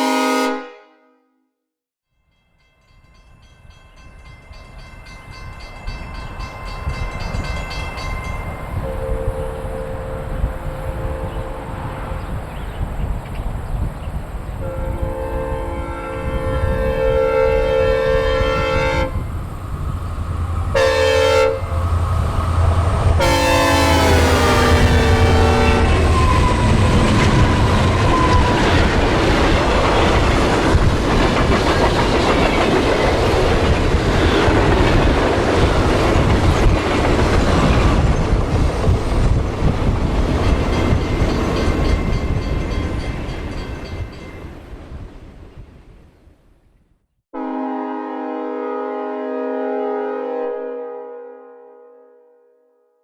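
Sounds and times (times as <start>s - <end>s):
locomotive air horn blasts: 0.0s - 1.4s, 8.8s - 12.2s, 14.6s - 19.3s, 20.7s - 22.3s, 23.2s - 26.4s, 47.4s - 52.3s
passing train rumble and clatter: 2.6s - 46.4s.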